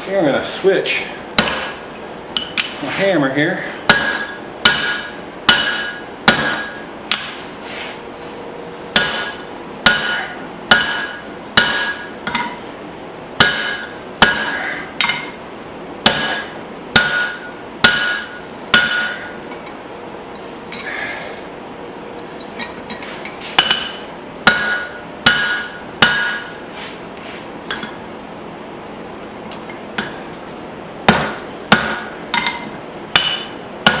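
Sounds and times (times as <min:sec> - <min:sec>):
hammer striking steel on anvil: 0:01.4 - 0:01.8, 0:02.4 - 0:02.8, 0:03.8 - 0:07.4, 0:08.9 - 0:12.6, 0:13.4 - 0:15.4, 0:16.0 - 0:19.5, 0:22.6 - 0:26.6, 0:29.5 - 0:30.4, 0:31.1 - 0:34.0.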